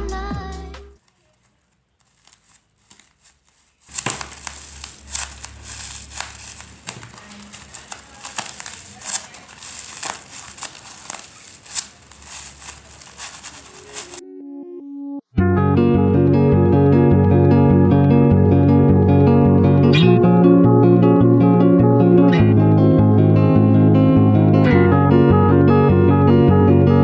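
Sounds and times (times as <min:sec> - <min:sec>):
craft materials crinkling: 0:01.0 - 0:14.2.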